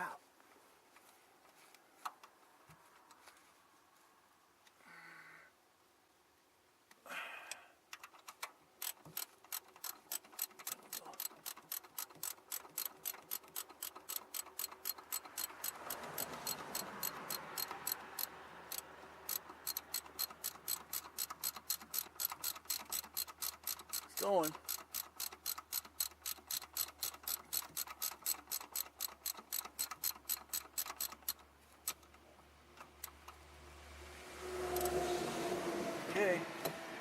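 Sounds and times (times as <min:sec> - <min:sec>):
ratchet wrench clicking: 0:08.0 - 0:32.1.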